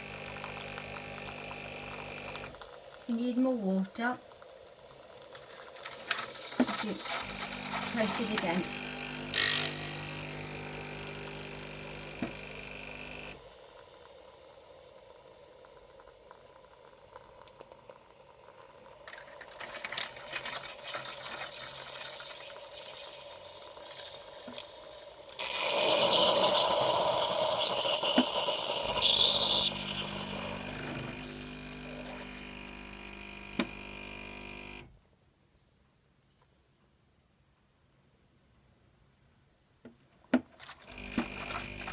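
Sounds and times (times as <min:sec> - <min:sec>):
water pump buzzing: 0:00.0 - 0:02.6, 0:06.4 - 0:13.4, 0:25.4 - 0:34.9, 0:40.8 - 0:41.9
loud hissing burst: 0:24.2 - 0:30.6.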